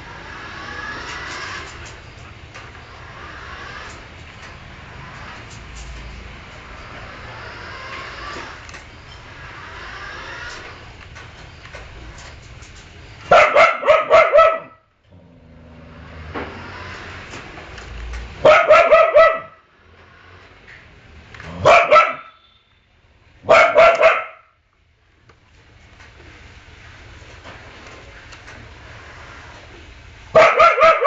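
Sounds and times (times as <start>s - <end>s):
dog barking: 13.3s - 14.9s, 18.4s - 19.6s, 21.5s - 22.4s, 23.4s - 24.6s, 30.3s - 31.0s.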